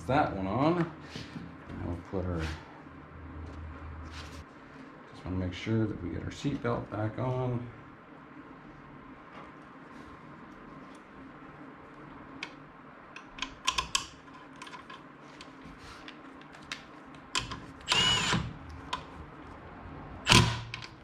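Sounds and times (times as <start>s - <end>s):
power drill whine: 17.9s - 18.5s.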